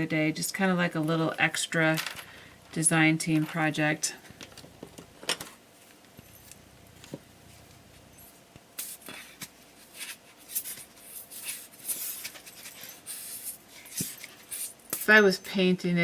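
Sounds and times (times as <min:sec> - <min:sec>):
scratchy rustling and scraping: 0:05.8 - 0:14.8.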